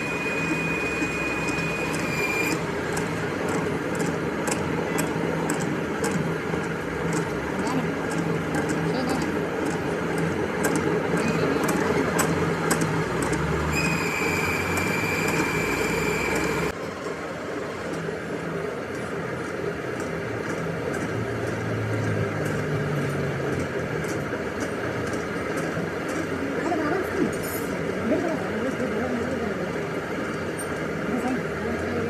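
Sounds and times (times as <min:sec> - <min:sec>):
high machine whine: 0:00.0 - 0:20.4
metalworking machinery running: 0:00.0 - 0:32.0.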